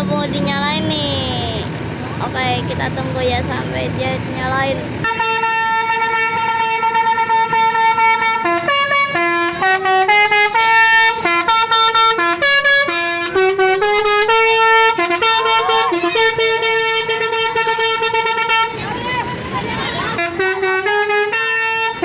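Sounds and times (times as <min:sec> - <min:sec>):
multi-tone bus horn playing a tune: 0:04.5 - 0:22.0.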